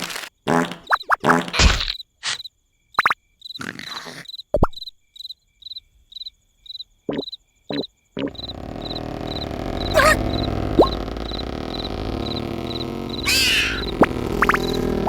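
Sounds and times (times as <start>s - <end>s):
cricket chirping: 0.9s - 15.0s
cartoon sound effects and squeaks: 9.3s - 11.0s, 12.3s - 14.9s.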